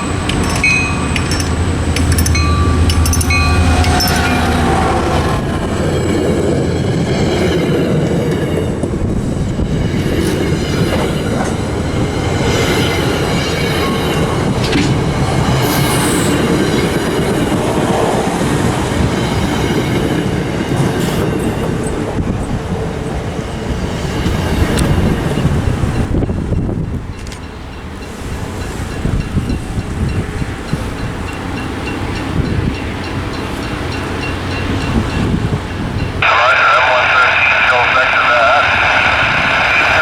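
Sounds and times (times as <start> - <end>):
wheels clattering over rail joints: 0.0 - 9.1
train rumbling past: 0.0 - 40.0.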